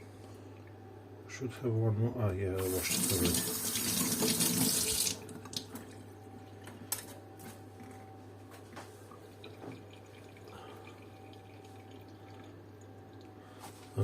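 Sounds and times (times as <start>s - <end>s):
tap water running into sink: 2.6s - 5.7s
water dripping: 9.1s - 13.4s.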